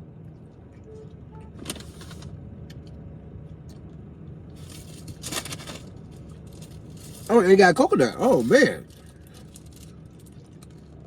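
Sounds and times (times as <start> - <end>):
car engine idling: 6.6 - 9.5.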